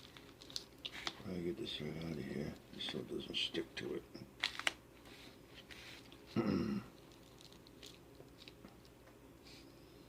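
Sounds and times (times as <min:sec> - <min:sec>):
man humming: 0:06.3 - 0:06.9.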